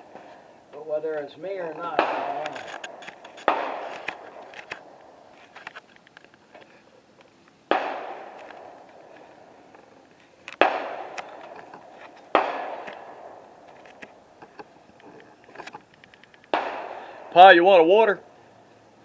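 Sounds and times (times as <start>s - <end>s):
gunshots echoing: 1.6s - 5.3s, 7.7s - 9.6s, 10.5s - 13.7s, 16.5s - 18.0s.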